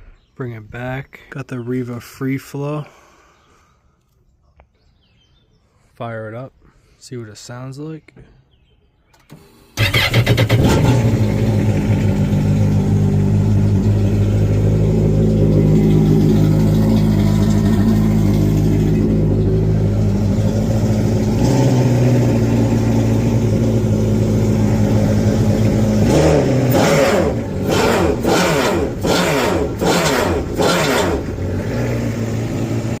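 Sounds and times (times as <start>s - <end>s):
engine revving in throttle blips: 9.2s - 33.0s
watercraft engine idling: 10.2s - 26.7s.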